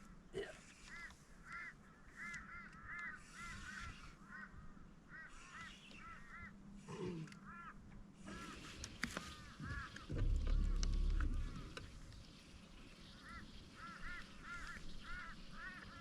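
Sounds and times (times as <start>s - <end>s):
birds calling: 0.0s - 16.0s
low steady hum: 9.4s - 15.7s.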